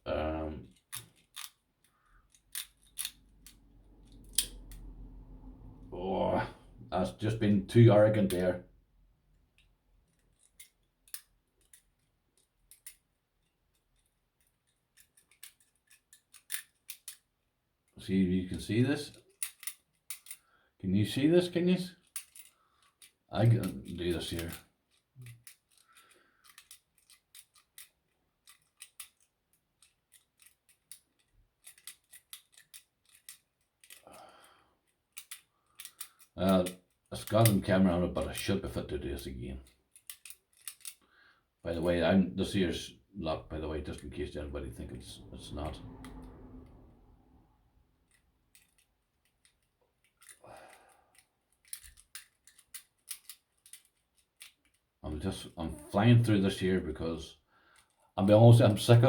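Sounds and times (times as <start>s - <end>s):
lock picks clicking and scraping: 0.6s - 5.0s, 9.3s - 18.0s, 19.1s - 20.5s, 22.0s - 38.6s, 39.6s - 41.6s, 48.0s - 55.5s, 57.7s - 58.1s.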